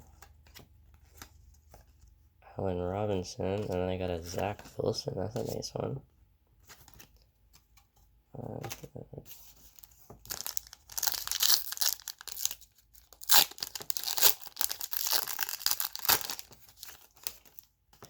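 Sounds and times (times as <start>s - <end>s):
card pack wrapper tearing and crinkling: 9.7s - 17.7s.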